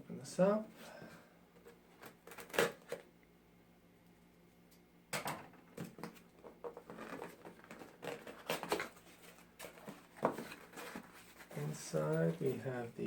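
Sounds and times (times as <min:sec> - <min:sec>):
packaging rustling and scraping: 0:01.6 - 0:03.0, 0:05.9 - 0:12.8.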